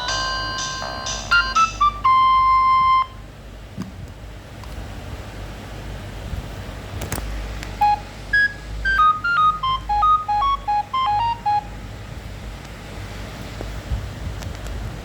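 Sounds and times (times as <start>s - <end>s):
phone ringtone beeping melody: 0.0s - 3.2s, 7.8s - 11.8s.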